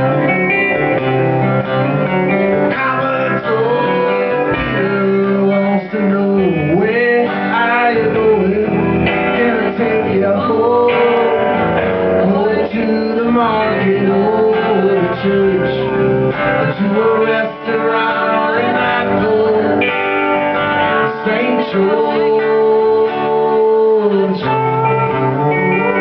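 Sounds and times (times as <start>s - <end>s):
live guitar band music: 0.0s - 26.0s.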